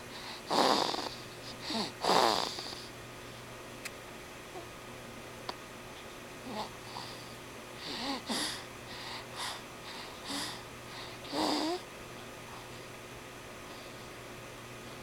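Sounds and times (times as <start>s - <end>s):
person snoring: 0.5s - 2.8s, 11.3s - 11.8s.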